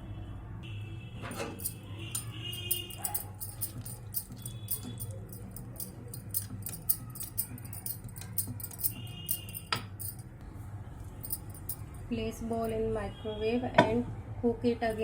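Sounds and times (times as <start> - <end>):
spoon clinking and scraping bowl: 1.4 - 10.3.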